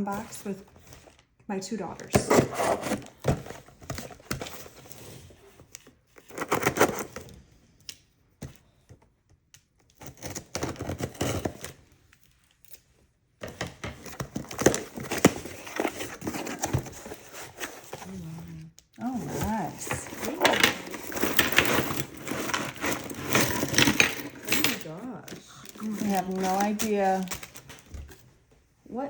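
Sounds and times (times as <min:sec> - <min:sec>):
jewelry clicking and jangling: 0:19.9 - 0:25.1
packaging crinkling and tearing: 0:25.0 - 0:28.3.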